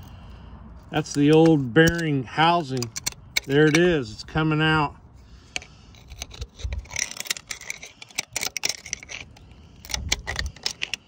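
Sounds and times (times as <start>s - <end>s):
metal scraping: 5.2s - 11.0s.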